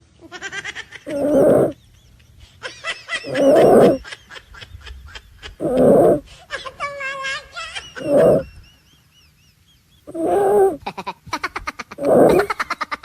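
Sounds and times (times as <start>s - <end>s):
loud rasping snore: 1.1s - 1.8s, 3.2s - 4.0s, 5.6s - 6.2s, 8.0s - 8.5s, 10.1s - 10.8s, 12.0s - 12.5s
squeaky whistling snore pulses: 1.1s - 1.8s, 3.2s - 4.0s, 5.6s - 6.2s, 8.0s - 8.5s, 10.1s - 10.8s, 12.0s - 12.5s.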